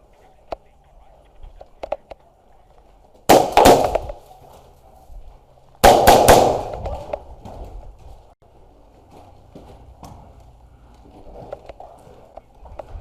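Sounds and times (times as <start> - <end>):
airsoft gun bursts: 3.3 - 4.2, 5.8 - 6.8.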